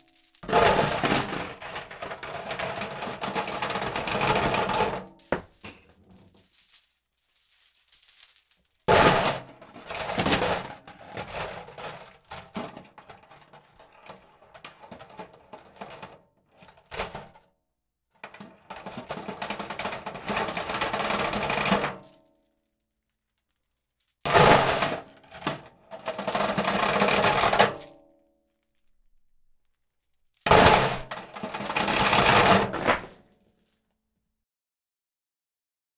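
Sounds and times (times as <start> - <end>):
loud chain clank: 30.5 - 33.2
metal chain dragged rattling: 30.5 - 33.2.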